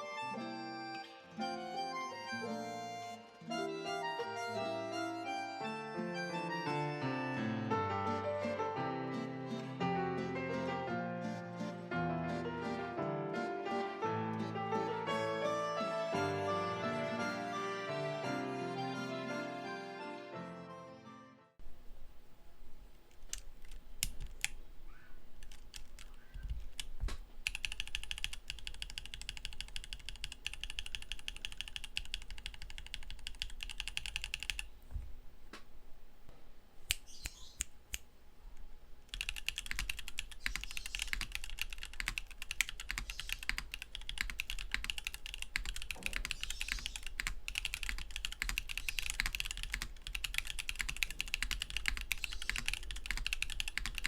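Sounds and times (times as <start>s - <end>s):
mechanical keyboard typing: 25.4s - 34.7s, 39.1s - 54.0s.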